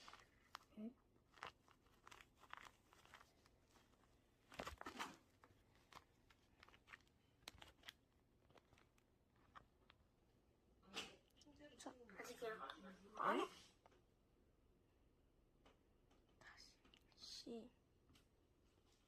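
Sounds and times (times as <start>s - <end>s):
crinkling and crunching clicks: 0.0s - 10.1s.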